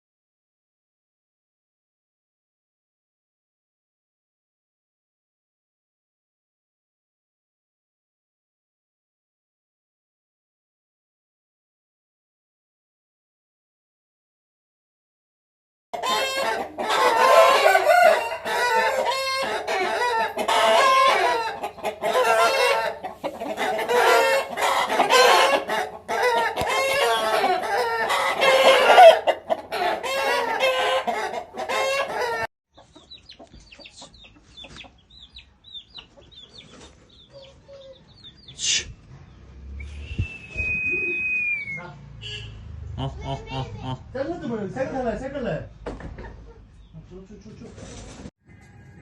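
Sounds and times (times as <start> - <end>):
roosters crowing: 16.0 - 32.5, 48.4 - 49.0
hens clucking: 16.0 - 39.4, 42.9 - 44.1.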